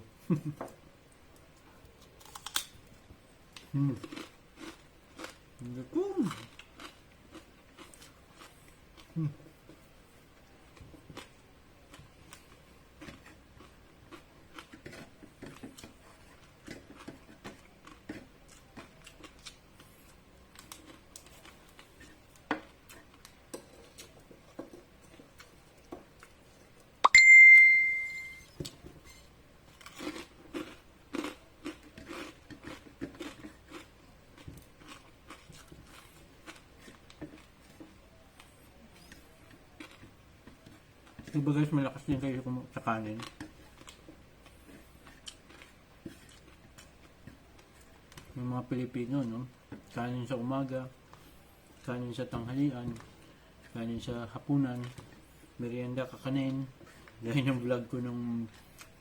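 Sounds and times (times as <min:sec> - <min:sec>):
crunching and chewing food: 0:00.2 - 0:27.0, 0:28.5 - 0:59.0
bright ding: 0:27.0 - 0:28.5.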